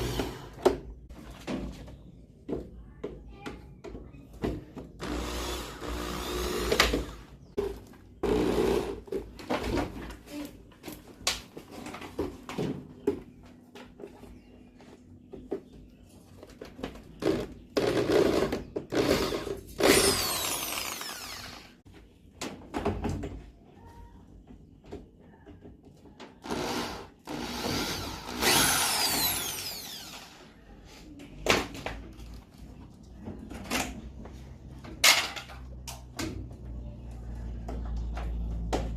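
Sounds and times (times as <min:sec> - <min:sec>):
power drill running: 0:05.0 - 0:07.2, 0:08.2 - 0:09.0, 0:17.8 - 0:21.8, 0:26.4 - 0:30.5
knocks and clatter of parts: 0:06.7 - 0:14.4, 0:31.4 - 0:36.8.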